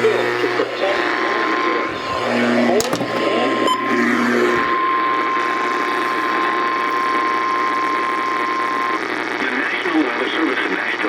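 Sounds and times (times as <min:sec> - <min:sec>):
radio static hiss: 0:00.0 - 0:11.0.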